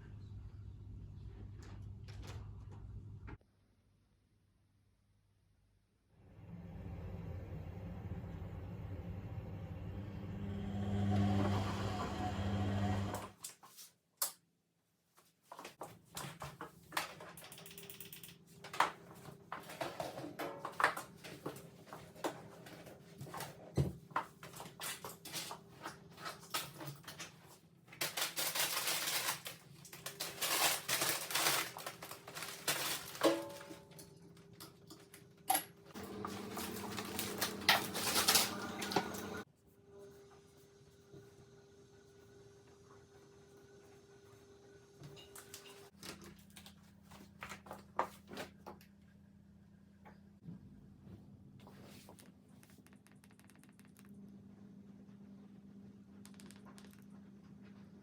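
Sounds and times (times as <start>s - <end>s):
rustling or scraping: 24.4s - 34.0s, 36.2s - 39.4s
clicks and taps: 52.6s - 54.2s.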